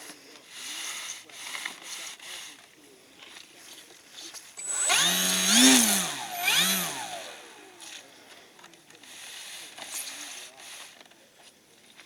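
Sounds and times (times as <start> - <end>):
model airplane motor buzzing: 4.6 - 8.0.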